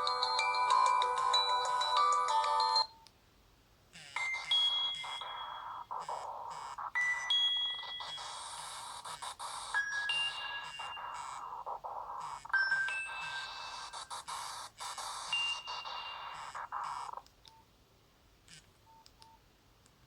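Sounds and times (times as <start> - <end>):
electronic ringtone notes: 0.0 - 3.0, 4.2 - 14.4, 15.0 - 17.2
polyphonic ringtone melody: 0.0 - 3.0, 4.2 - 17.2.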